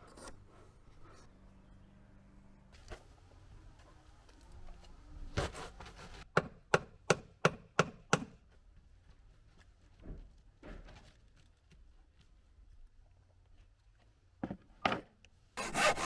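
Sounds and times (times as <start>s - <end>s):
sharp knocks on wood: 6.4s - 8.3s.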